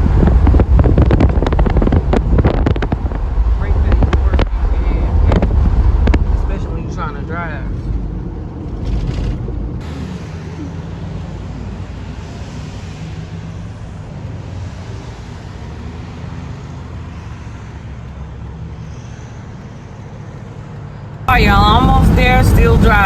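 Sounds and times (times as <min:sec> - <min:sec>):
low rumble: 0:00.0 - 0:12.6, 0:21.3 - 0:23.0
car road noise and engine hum: 0:00.0 - 0:23.0.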